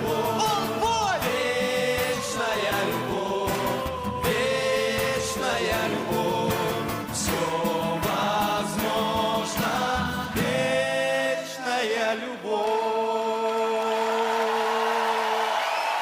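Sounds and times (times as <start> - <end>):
backing beat: 0.0 - 10.8
voices singing: 0.0 - 15.7.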